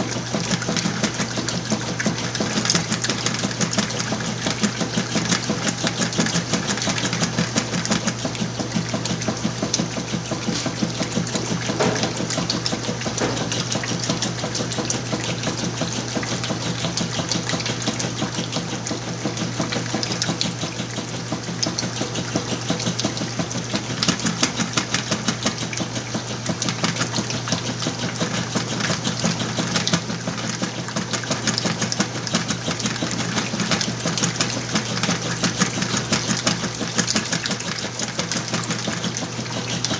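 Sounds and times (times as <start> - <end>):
washing machine motor hum: 0.0 - 39.9
water sloshing: 8.1 - 15.9.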